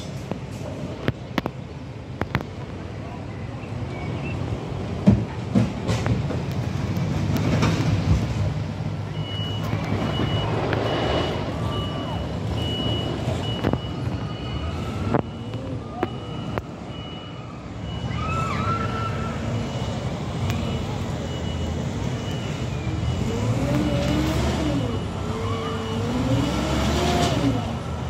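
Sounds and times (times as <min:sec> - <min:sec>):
construction machinery engine rumble: 0:00.0 - 0:28.0
reversing alarm beeping: 0:09.1 - 0:26.8.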